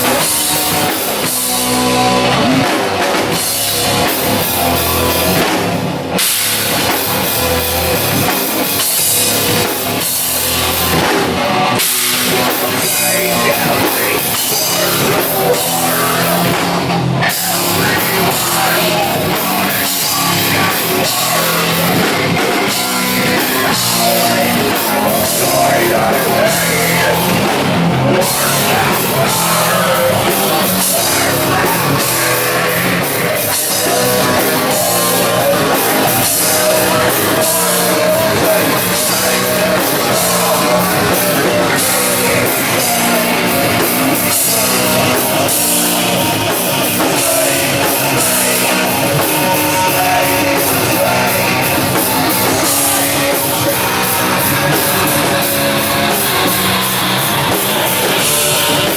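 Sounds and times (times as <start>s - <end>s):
drum kit: 0.0s - 58.9s
electric guitar: 0.0s - 58.9s.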